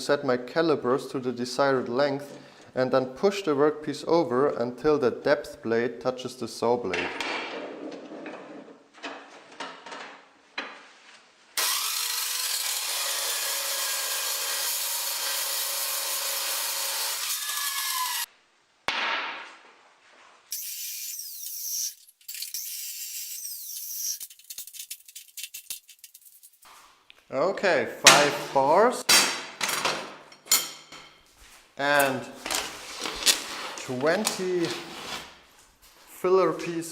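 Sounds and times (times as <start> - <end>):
chop saw cutting steel: 11.6 - 18.3.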